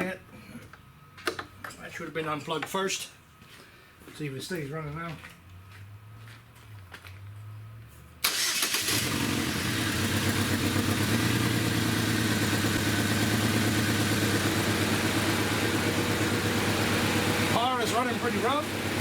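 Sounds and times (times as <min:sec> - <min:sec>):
car engine cranking and starting: 0:08.2 - 0:19.0
car engine idling rough: 0:09.0 - 0:19.0.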